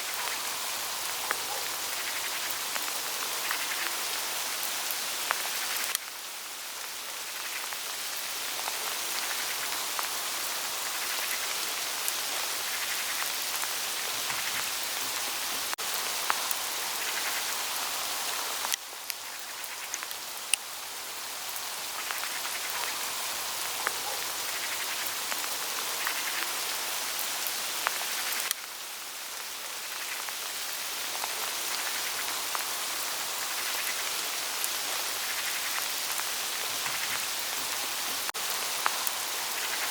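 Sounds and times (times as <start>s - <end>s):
hail hissing on leaves: 0.0s - 39.9s.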